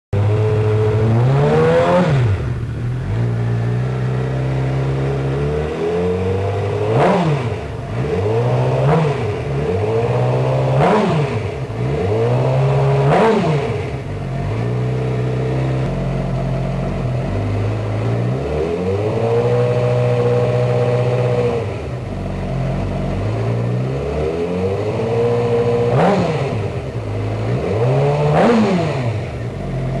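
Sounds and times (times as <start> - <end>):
engine idling and revving: 0.2 - 30.0.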